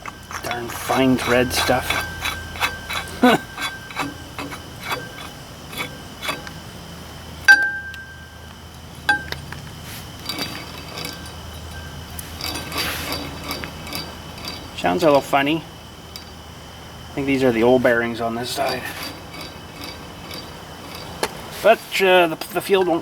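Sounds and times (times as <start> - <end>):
metal tools clinking: 0.0 - 6.8, 7.5 - 16.4, 17.2 - 21.7
sharp ringing metal clink: 7.5 - 9.4.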